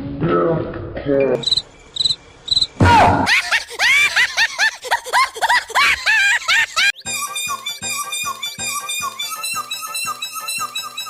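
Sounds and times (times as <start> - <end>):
high cricket-like chirps: 1.4 - 2.8
squeaky rising and falling tones: 6.2 - 11.0.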